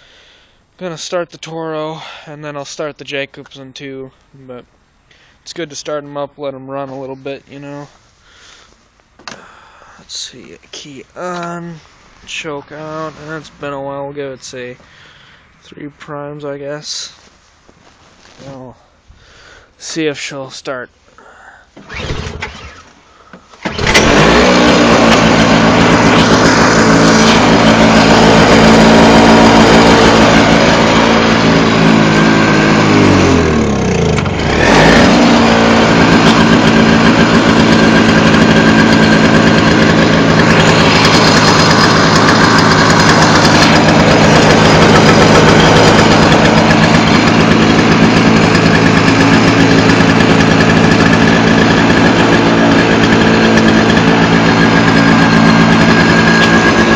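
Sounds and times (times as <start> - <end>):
snowblower engine starting and running: 21.2 - 56.9.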